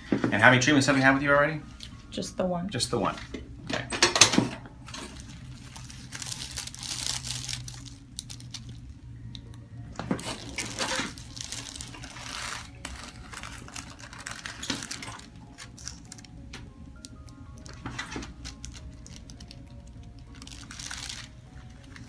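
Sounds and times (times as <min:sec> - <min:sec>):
low steady hum: 0:00.0 - 0:22.0
rustling and crinkling: 0:04.8 - 0:08.9, 0:10.0 - 0:16.3, 0:17.6 - 0:22.0.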